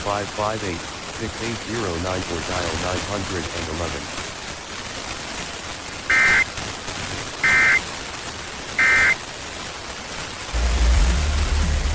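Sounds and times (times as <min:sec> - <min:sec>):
steady radio hiss: 0:00.0 - 0:11.9
warbling data tone bursts: 0:06.1 - 0:06.5, 0:07.4 - 0:07.8, 0:08.8 - 0:09.2
loud low hum: 0:10.6 - 0:11.9.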